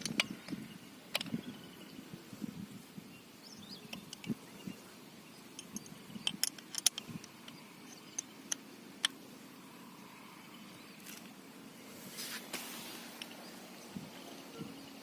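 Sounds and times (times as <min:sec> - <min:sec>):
soft rush of noise: 0:00.0 - 0:15.0
spanner clicking on bolts: 0:05.6 - 0:09.2.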